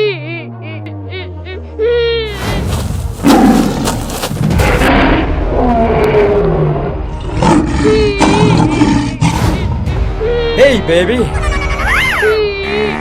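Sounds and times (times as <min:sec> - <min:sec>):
background music: 0:00.0 - 0:13.0
wild animals roaring and growling: 0:03.1 - 0:09.6.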